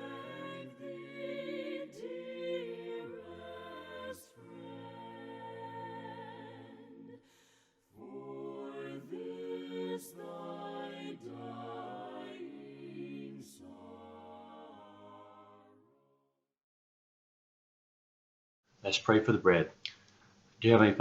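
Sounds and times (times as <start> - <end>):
choir singing hymn unaccompanied: 0.0 - 16.0.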